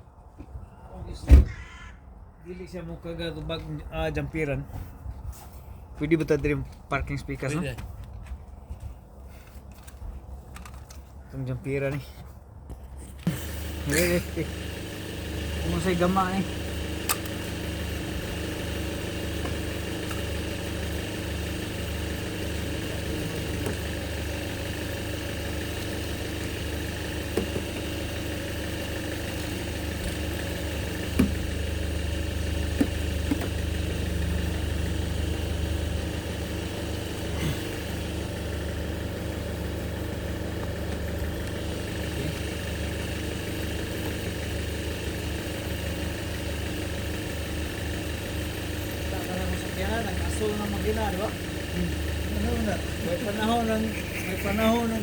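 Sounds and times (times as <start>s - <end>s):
vehicle engine idling: 13.3s - 55.0s.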